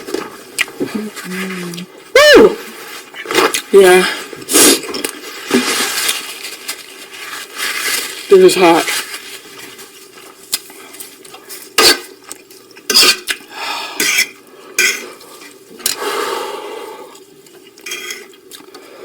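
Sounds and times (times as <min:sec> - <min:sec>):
utensils scraping a bowl: 0:17.8 - 0:18.4.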